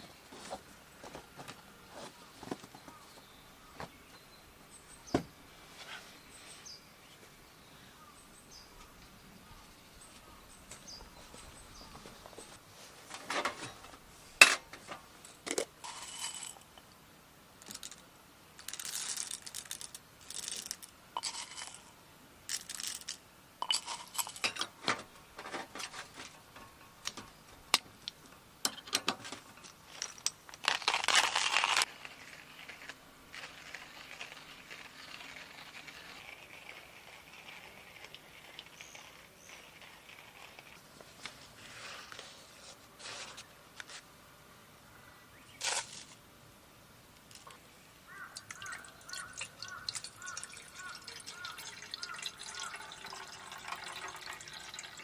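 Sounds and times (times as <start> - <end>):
faint steady hiss: 0.0 - 55.0
small objects clicking and clinking: 15.5 - 17.0, 17.6 - 21.9, 22.5 - 24.7, 27.0 - 40.8
rustling: 17.6 - 21.9, 29.1 - 44.1, 45.6 - 46.2.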